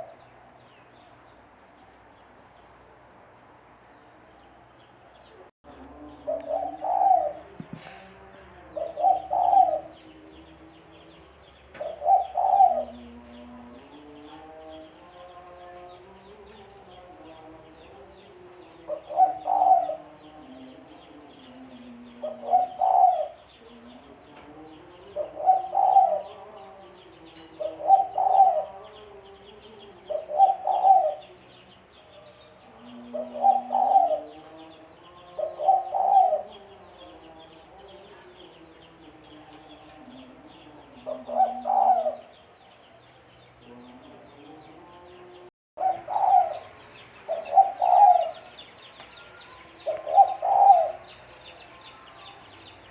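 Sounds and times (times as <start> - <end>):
dove cooing: 5.9 - 8.0, 8.6 - 10.2, 11.7 - 13.9, 18.8 - 20.6, 21.5 - 23.9, 25.1 - 26.6, 27.4 - 28.9, 30.1 - 31.4, 32.8 - 34.6, 35.3 - 36.7, 40.9 - 42.4, 45.8 - 48.6, 49.2 - 51.2.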